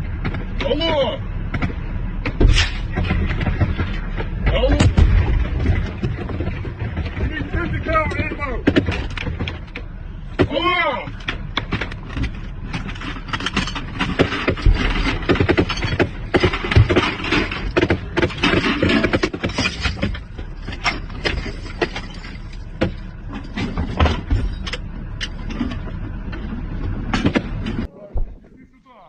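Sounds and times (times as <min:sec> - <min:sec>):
sharp knocks and rattles: 0:00.0 - 0:28.5
military vehicle engine running: 0:00.0 - 0:29.0.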